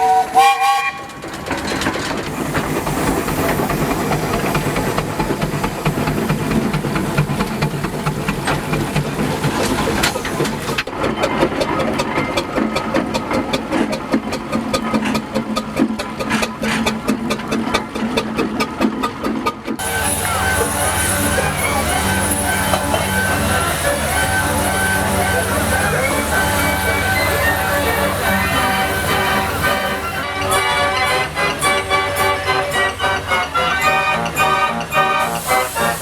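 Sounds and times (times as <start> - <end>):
steam whistle: 0.0 - 1.2, 19.8 - 36.0
steam hissing: 2.2 - 10.8, 19.8 - 36.0.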